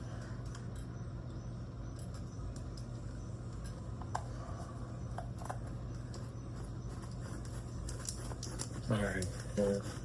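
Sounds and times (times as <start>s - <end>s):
steady low hum: 0.0s - 10.0s
small objects clicking and tapping: 7.0s - 9.6s.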